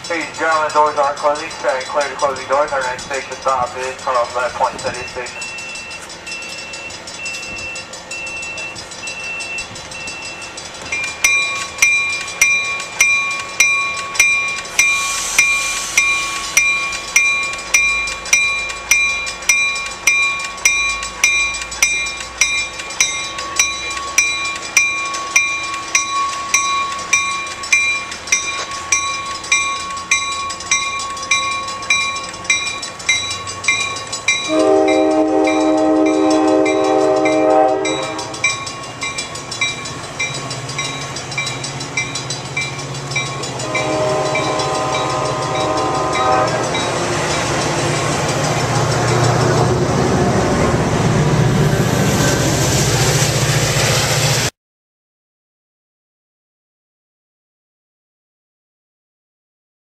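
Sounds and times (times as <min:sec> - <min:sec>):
railway warning bell ringing: 0:00.0 - 0:53.9
train air horn: 0:34.5 - 0:38.4, 0:43.6 - 0:46.7.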